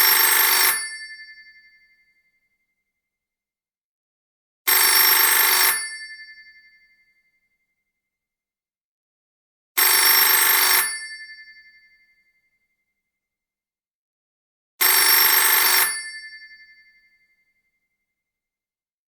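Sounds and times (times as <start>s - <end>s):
telephone bell ringing: 0.0s - 1.1s, 4.7s - 6.4s, 9.8s - 11.6s, 14.8s - 17.0s.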